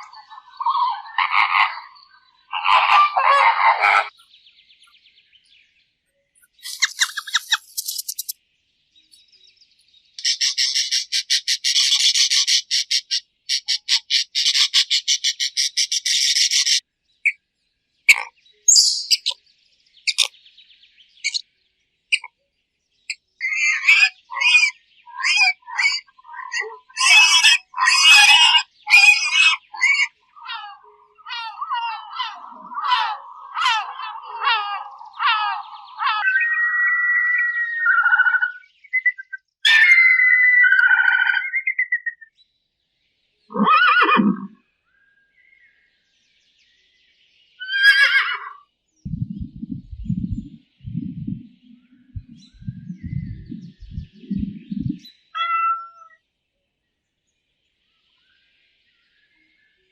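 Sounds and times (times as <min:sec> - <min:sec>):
short chirping bird-like calls: 0:00.0 - 0:05.0, 0:06.4 - 0:08.4, 0:10.2 - 0:17.4, 0:18.1 - 0:19.4, 0:20.0 - 0:20.4, 0:21.0 - 0:22.4, 0:23.0 - 0:39.8, 0:47.5 - 0:56.2.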